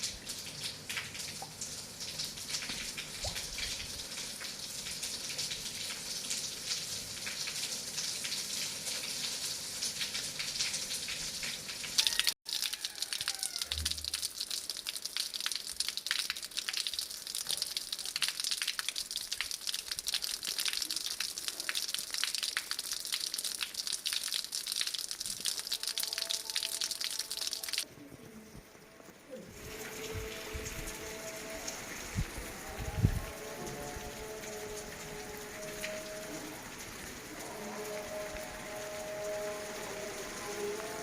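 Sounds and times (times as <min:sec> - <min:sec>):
heavy rain falling: 0:00.0 - 0:41.0.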